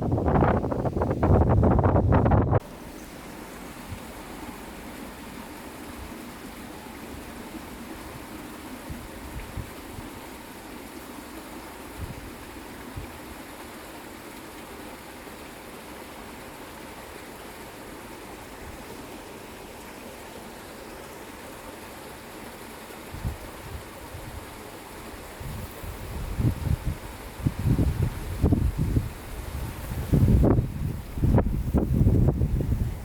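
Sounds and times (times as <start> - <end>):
wind thumps on microphone: 0.0 - 2.6, 25.4 - 33.0
stream rushing: 0.0 - 33.0.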